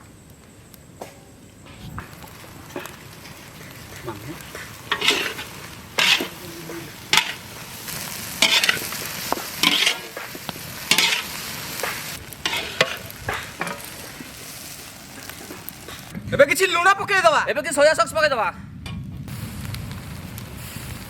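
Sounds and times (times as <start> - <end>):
vegetables sizzling in a pan: 1.6 - 16.1, 19.3 - 21.0
ladle scraping a pan: 1.8 - 16.1.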